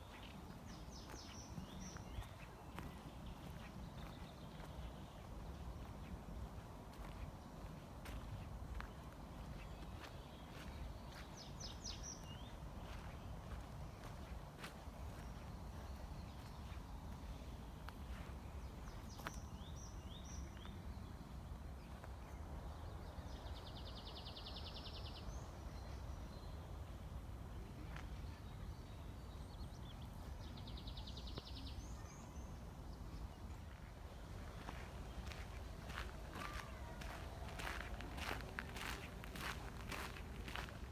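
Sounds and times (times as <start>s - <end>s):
birds chirping: 34.4s - 40.9s.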